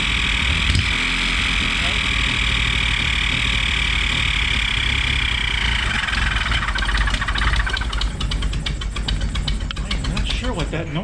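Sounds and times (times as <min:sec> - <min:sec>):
car engine idling: 0:01.8 - 0:10.6.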